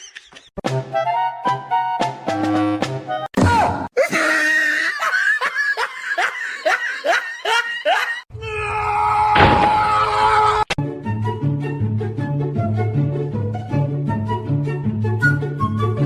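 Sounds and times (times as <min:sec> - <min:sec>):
background music: 0:00.6 - 0:03.7, 0:10.8 - 0:16.0.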